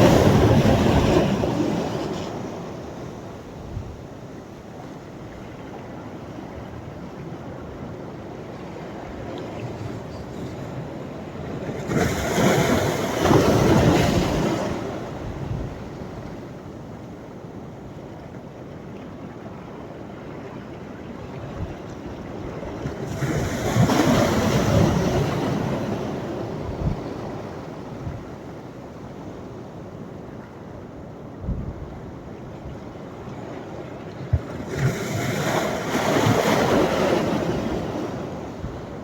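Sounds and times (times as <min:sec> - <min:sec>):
waves crashing on beach: 0:00.0 - 0:16.7, 0:34.2 - 0:39.0.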